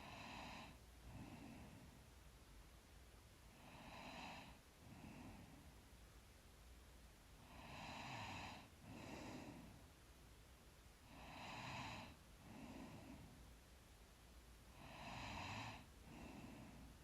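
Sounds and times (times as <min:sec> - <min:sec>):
woman breathing faintly: 0:00.0 - 0:02.2, 0:03.5 - 0:05.9, 0:07.4 - 0:10.0, 0:11.0 - 0:13.5, 0:14.7 - 0:17.0.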